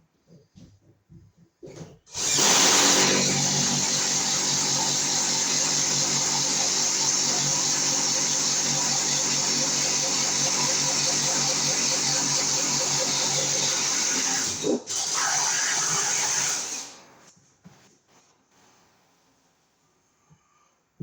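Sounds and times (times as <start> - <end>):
battery drill boring a hole: 2.1 - 17.1.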